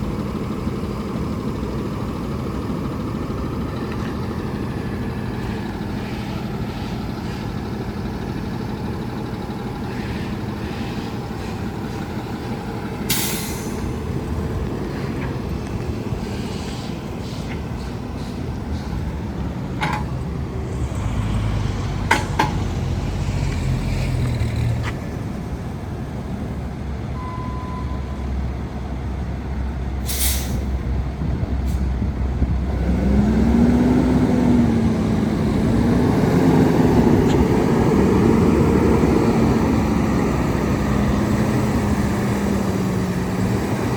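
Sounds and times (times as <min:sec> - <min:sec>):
diesel truck engine revving: 0:00.0 - 0:27.3, 0:28.4 - 0:43.9
short air hiss: 0:30.1 - 0:30.7.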